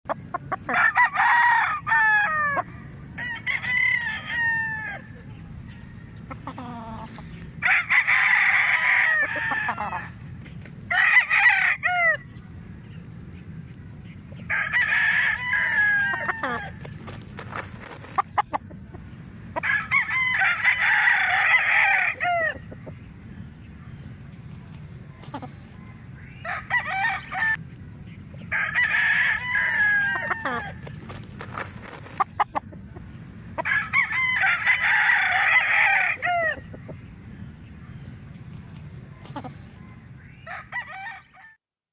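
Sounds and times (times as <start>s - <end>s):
clucking calls: 0.1s - 0.8s, 16.1s - 19.1s, 25.1s - 25.8s, 30.1s - 33.7s, 39.2s - 39.8s
roosters crowing: 0.1s - 12.4s, 14.4s - 23.1s, 25.0s - 27.6s, 28.4s - 37.2s, 39.2s - 41.6s.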